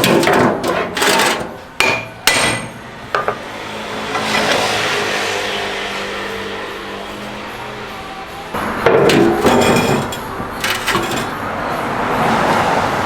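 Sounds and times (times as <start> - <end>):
metallic clanks on brake parts: 0.0 - 3.5, 8.6 - 11.5
workshop tool whirring: 8.8 - 11.4.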